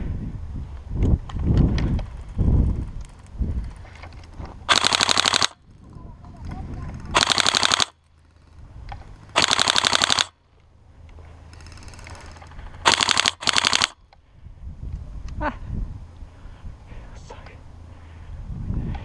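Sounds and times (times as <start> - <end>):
airsoft rifle full-auto bursts: 4.7 - 5.6, 7.0 - 8.5, 9.3 - 10.4, 11.5 - 14.0.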